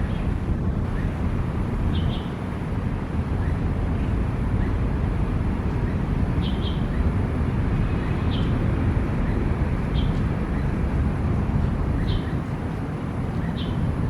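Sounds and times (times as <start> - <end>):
low outdoor rumble: 0.0 - 14.0
bird chirping: 1.9 - 2.4, 5.9 - 7.1, 8.0 - 8.6, 9.9 - 10.7, 12.0 - 12.4, 13.4 - 13.9.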